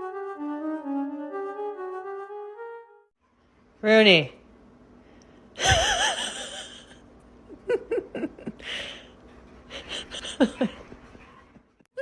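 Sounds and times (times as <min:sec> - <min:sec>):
dog huffing: 0:08.6 - 0:11.6.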